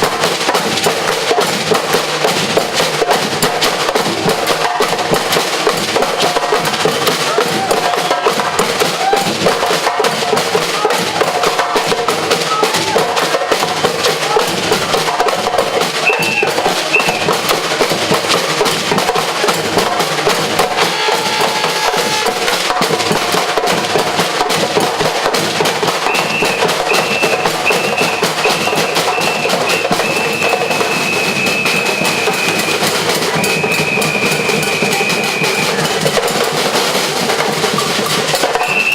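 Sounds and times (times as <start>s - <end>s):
percussion ensemble drumming: 0.0s - 38.9s
high whistle blasts: 16.0s - 17.3s, 20.8s - 22.5s, 26.0s - 32.8s, 33.4s - 35.8s, 38.6s - 38.9s.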